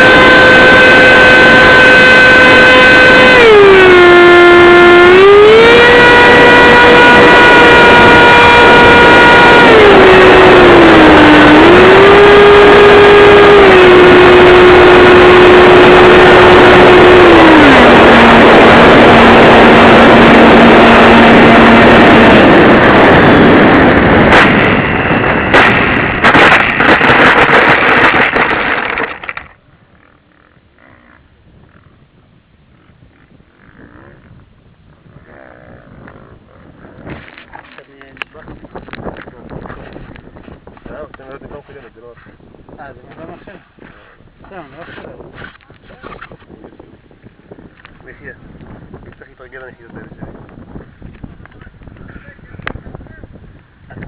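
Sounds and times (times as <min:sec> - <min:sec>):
electric ducted fan whine: 0:00.0 - 0:54.0
rushing noise with sharp knocks: 0:17.2 - 0:29.6.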